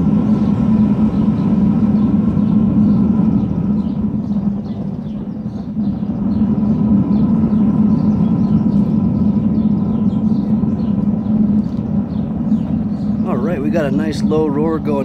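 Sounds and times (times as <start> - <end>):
furnace burner roaring: 0.0 - 15.0.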